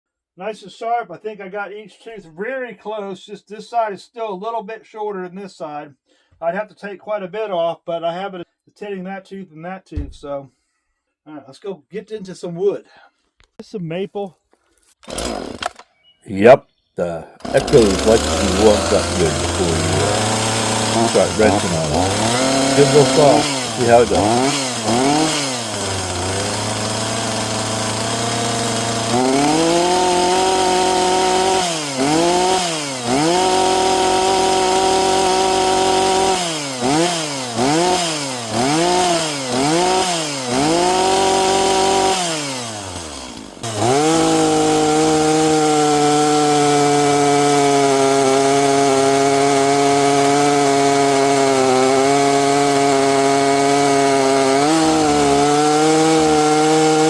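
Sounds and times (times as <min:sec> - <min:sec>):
chainsaw cutting wood: 0:15.0 - 0:15.8, 0:17.4 - 0:57.0
chainsaw revving and idling: 0:15.0 - 0:15.8, 0:17.4 - 0:57.0.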